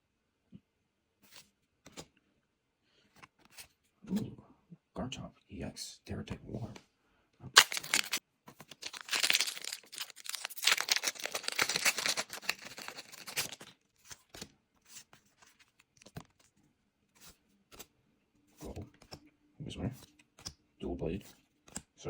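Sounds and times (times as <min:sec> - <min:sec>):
foil wrapper tearing and crinkling: 0:07.6 - 0:14.2.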